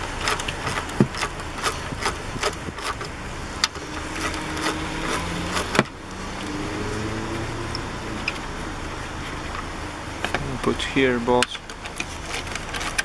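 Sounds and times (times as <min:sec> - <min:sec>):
sharp metal clicks: 0:00.0 - 0:06.6
low engine hum: 0:00.0 - 0:13.0
ratchet clicking: 0:00.2 - 0:06.6.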